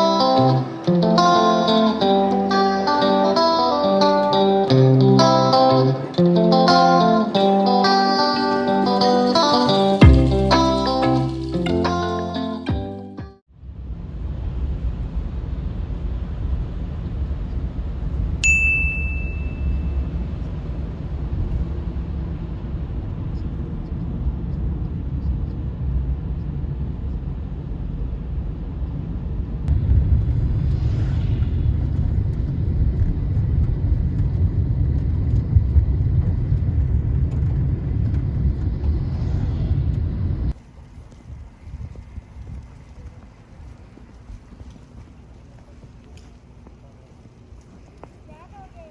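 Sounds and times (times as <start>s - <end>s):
low outdoor rumble: 13.5s - 48.9s
bright ringing ding: 18.4s - 20.0s.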